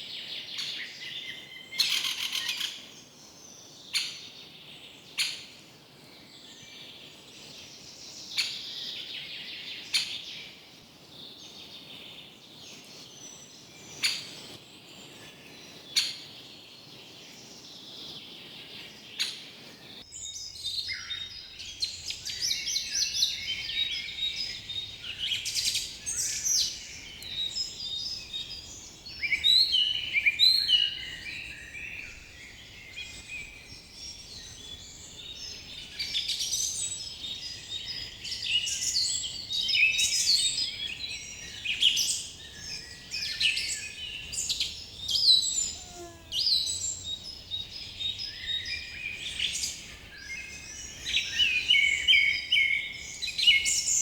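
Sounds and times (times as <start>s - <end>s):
distant birdsong: 11.3s - 54.0s.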